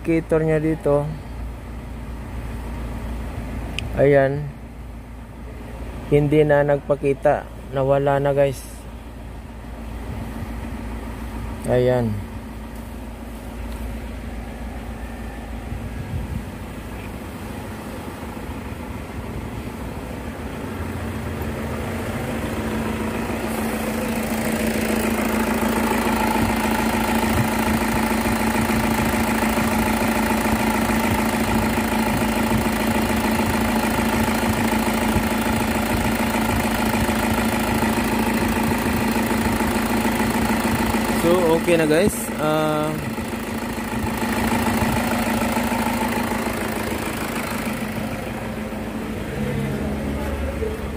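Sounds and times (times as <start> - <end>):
car engine idling: 0.0 - 50.9.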